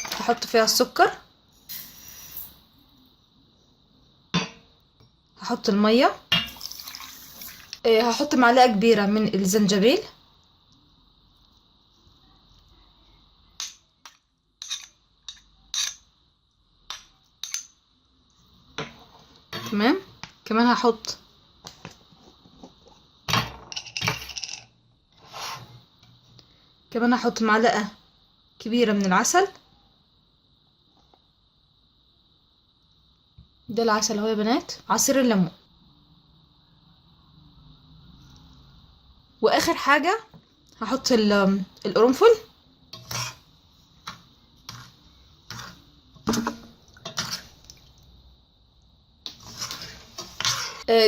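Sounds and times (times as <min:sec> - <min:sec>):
metal spoon clinking on kitchenware: 0:13.6 - 0:16.1
spoon scraping: 0:14.6 - 0:16.1, 0:42.9 - 0:47.8, 0:49.3 - 0:50.9.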